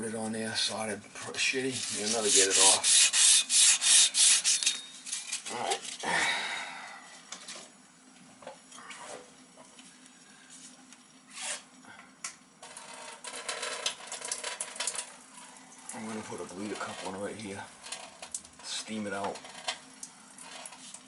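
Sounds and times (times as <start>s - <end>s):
abrasive rubbing copper pipe: 1.4s - 5.8s.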